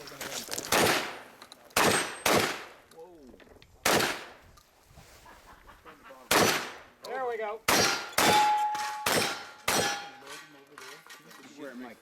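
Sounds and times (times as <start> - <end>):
shotgun shots: 0.7 - 2.8, 3.8 - 4.4, 6.3 - 6.9, 7.7 - 10.2.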